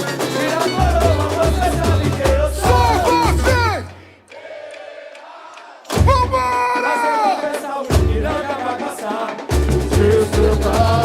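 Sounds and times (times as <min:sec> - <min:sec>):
low drums: 0:00.8 - 0:04.0, 0:05.9 - 0:06.8, 0:07.9 - 0:08.6, 0:09.5 - 0:11.0.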